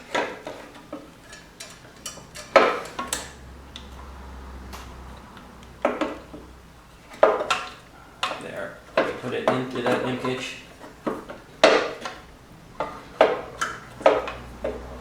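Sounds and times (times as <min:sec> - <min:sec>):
small parts clicking and tapping: 0:00.1 - 0:04.0.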